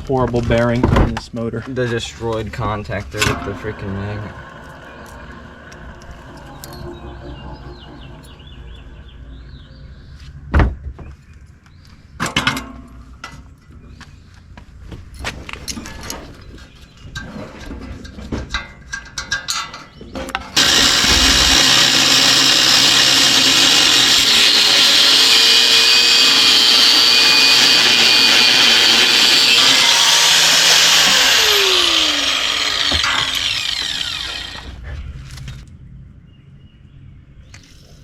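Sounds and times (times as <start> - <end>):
power tool running: 3.1 - 8.6, 20.6 - 34.8.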